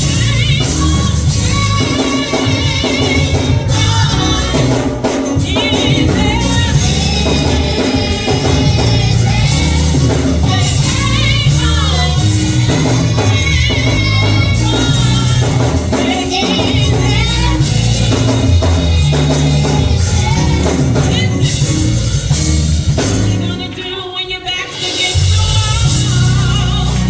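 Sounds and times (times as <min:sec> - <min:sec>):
band with bass and percussion: 0:00.0 - 0:27.0
gospel singing: 0:00.0 - 0:27.0.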